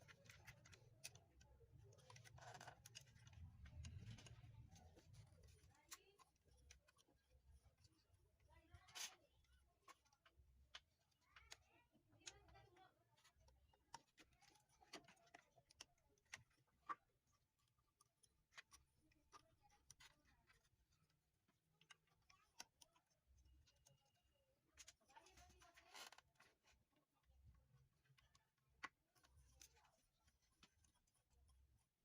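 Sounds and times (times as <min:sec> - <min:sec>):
small tools clicking and tapping: 0:00.0 - 0:32.0.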